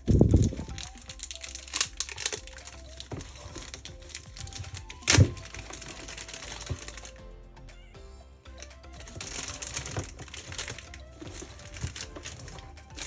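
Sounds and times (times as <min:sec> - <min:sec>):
soft background music: 0:00.0 - 0:13.0.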